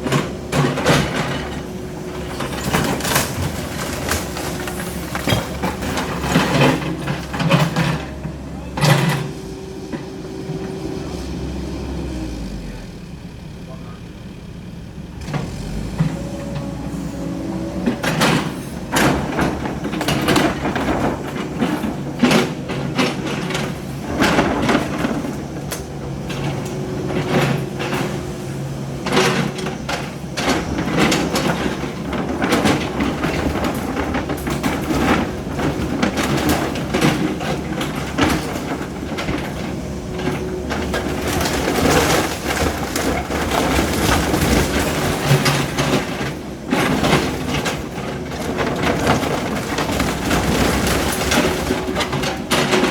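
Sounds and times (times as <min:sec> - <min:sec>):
diesel engine running: 0:00.0 - 0:52.9
crashes of splintering wood and debris: 0:00.1 - 0:09.4, 0:17.8 - 0:52.9.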